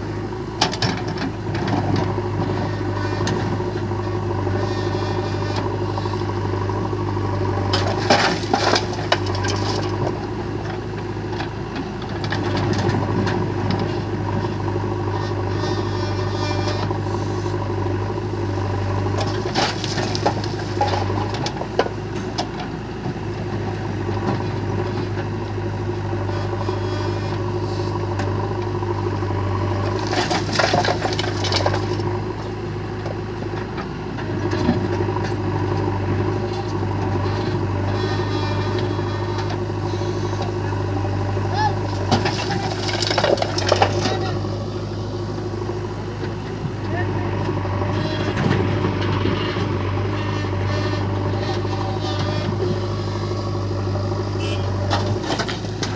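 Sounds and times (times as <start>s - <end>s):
diesel engine running: 0.0s - 55.9s
bucket dumping stones clattering: 19.2s - 21.8s, 30.0s - 32.1s, 41.8s - 44.5s.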